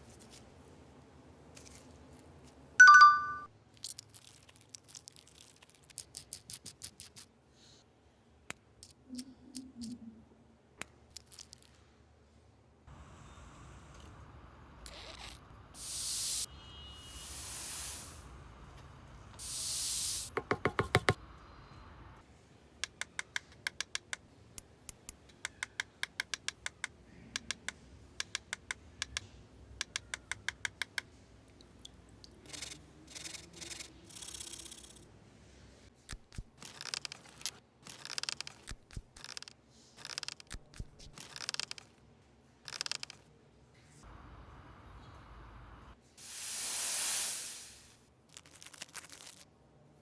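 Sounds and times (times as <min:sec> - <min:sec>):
sharp clicks: 0:22.8 - 0:31.1, 0:36.1 - 0:41.9, 0:42.7 - 0:43.2.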